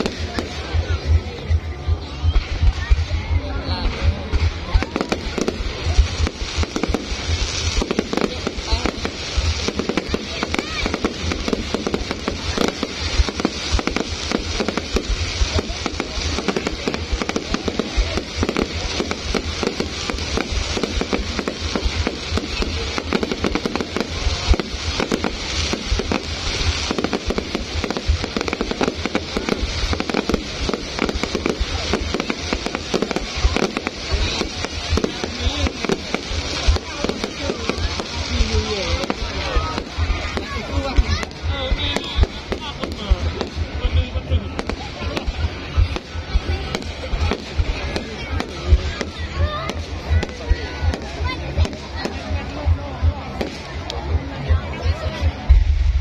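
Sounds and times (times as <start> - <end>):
fireworks and firecrackers banging: 0.0 - 56.0.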